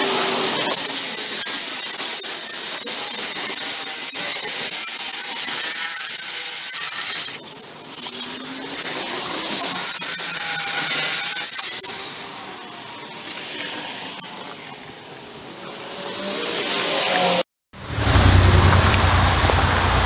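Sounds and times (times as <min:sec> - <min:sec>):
reciprocating saw cutting: 0:00.0 - 0:17.5.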